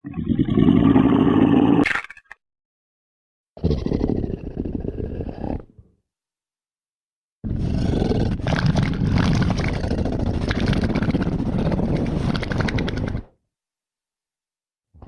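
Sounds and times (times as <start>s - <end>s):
rattling dinosaur roar: 7.5s - 13.3s.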